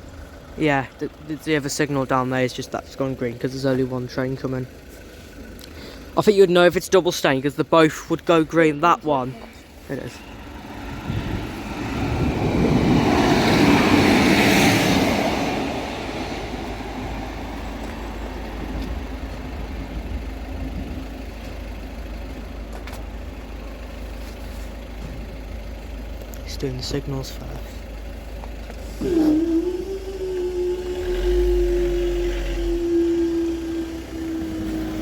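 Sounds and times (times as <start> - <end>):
low traffic rumble: 0.0 - 35.0
vehicle driving past: 10.2 - 21.4, 28.8 - 35.0.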